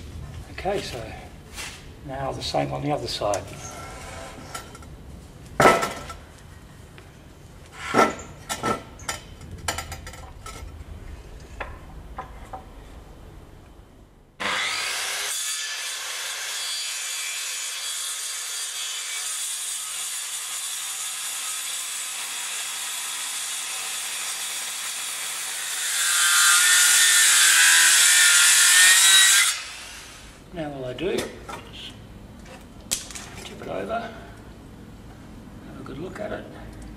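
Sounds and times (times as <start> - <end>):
power saw cutting wood: 14.4 - 30.4.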